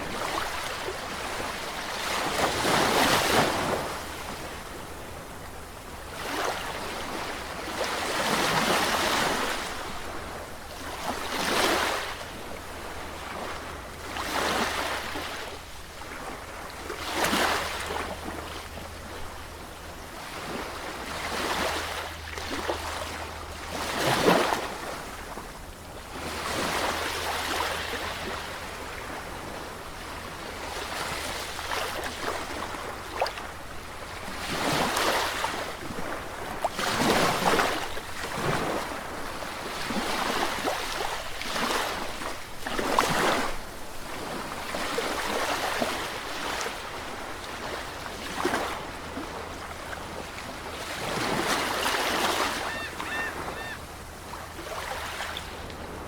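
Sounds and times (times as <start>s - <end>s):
sea waves surging: 50.2s - 56.0s.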